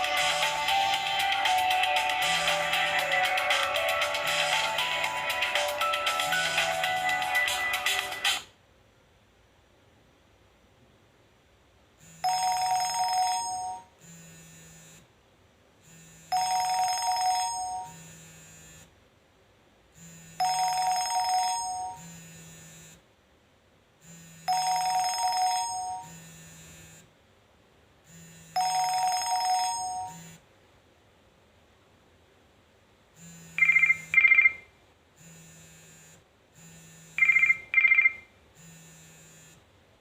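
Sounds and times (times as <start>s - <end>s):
bell-like phone ringtone: 0.0s - 8.4s, 12.2s - 13.9s, 16.3s - 18.1s, 20.4s - 22.2s, 24.5s - 26.2s, 28.5s - 30.4s, 33.6s - 34.6s, 37.2s - 38.3s.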